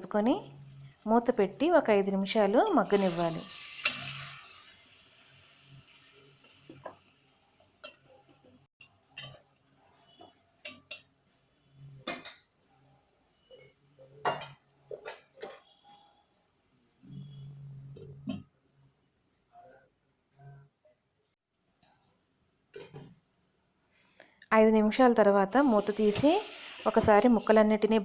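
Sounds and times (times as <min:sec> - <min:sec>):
sizzle: 0:02.6 - 0:09.4, 0:25.5 - 0:28.0.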